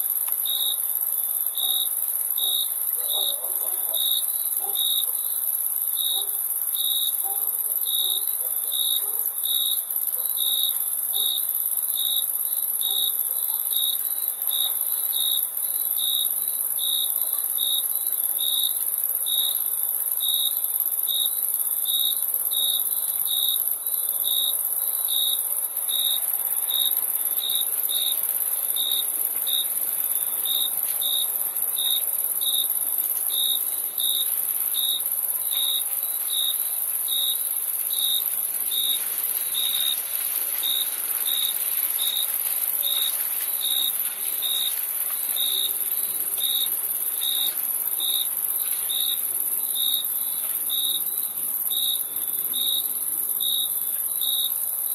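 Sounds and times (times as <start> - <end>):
cricket chirping: 0.1 - 54.9
insect trill: 13.7 - 54.9.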